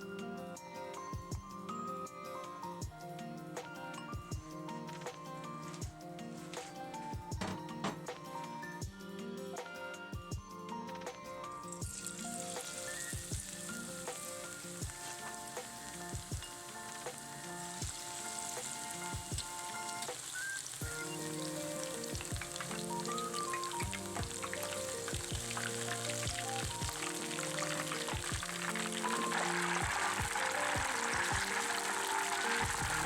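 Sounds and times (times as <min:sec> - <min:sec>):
background music with a beat: 0:00.0 - 0:33.0
food deep-frying in oil: 0:11.7 - 0:33.0.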